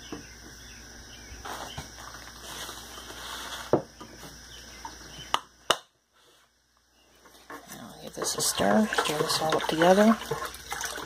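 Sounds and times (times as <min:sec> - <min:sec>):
faint high hum: 0:00.0 - 0:11.0
handling metal can and bucket: 0:07.3 - 0:11.0.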